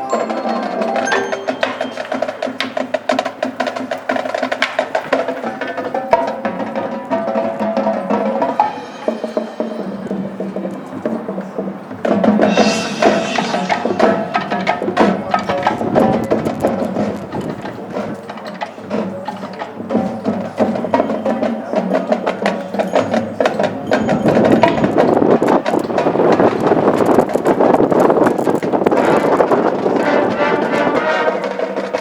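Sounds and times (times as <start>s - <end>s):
marching band playing: 0.0s - 17.2s.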